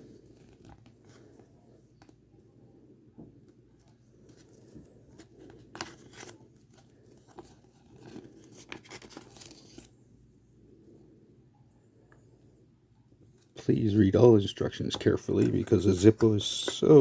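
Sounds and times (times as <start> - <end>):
paper leaflet rustling: 3.8 - 10.0.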